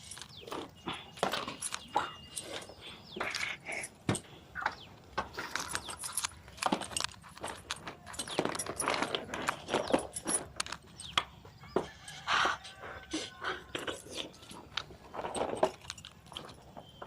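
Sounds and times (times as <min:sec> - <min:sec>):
crunching and chewing: 0:04.6 - 0:17.0.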